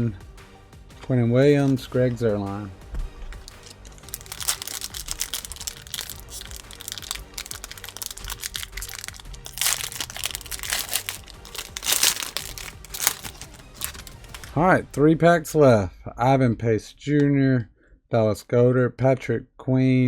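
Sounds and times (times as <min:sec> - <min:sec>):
quiet background music: 0:00.0 - 0:20.0
plastic wrapper crinkling and tearing: 0:03.4 - 0:14.5.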